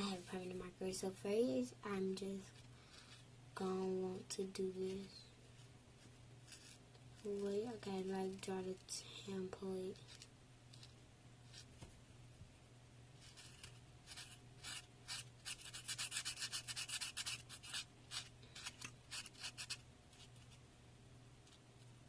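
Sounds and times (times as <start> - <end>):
marker scratching on foam: 4.9 - 7.8, 9.9 - 11.8, 13.2 - 20.6.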